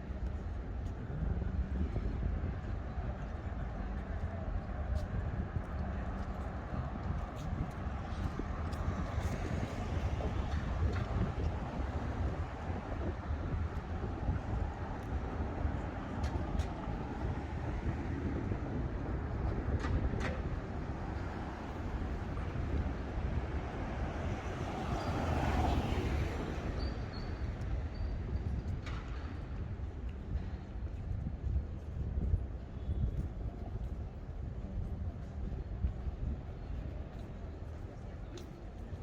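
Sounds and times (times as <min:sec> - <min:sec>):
cars passing: 0:05.5 - 0:28.3.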